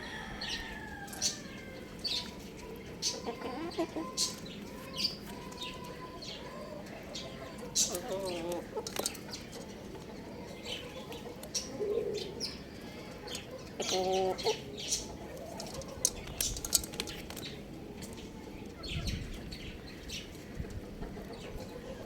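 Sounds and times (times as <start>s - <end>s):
young rooster chirping and clucking: 0.0s - 16.6s.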